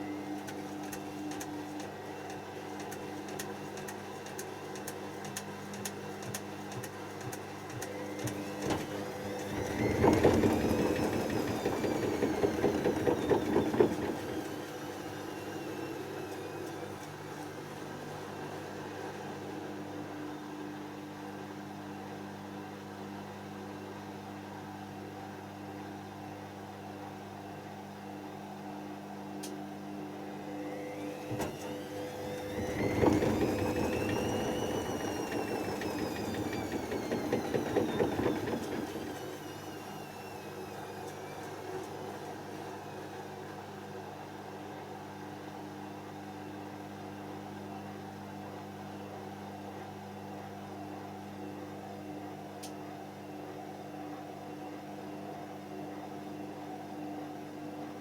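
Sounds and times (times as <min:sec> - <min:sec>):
washing machine humming: 0:00.0 - 0:22.6, 0:28.8 - 0:58.0
drum motor whining: 0:07.7 - 0:16.8, 0:31.0 - 0:43.2.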